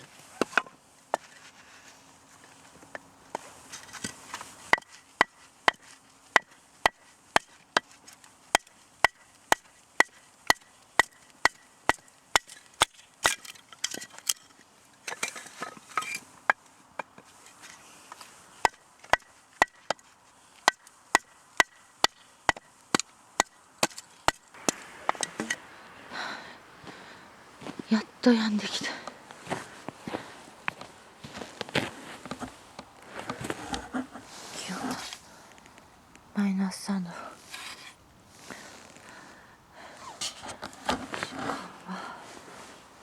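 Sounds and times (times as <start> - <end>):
blade striking firewood: 3.8 - 14.5, 18.6 - 25.6.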